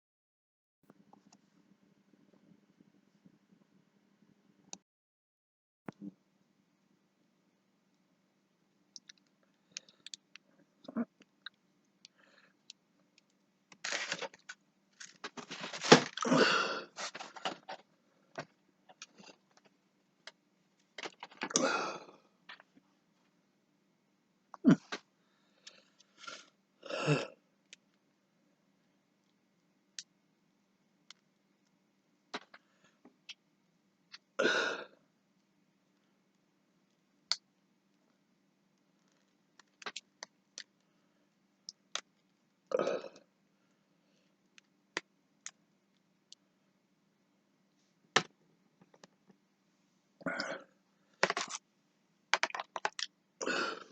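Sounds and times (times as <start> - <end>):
faint steady hum: 5.9 - 53.9
crunchy rustling: 13.8 - 16.3.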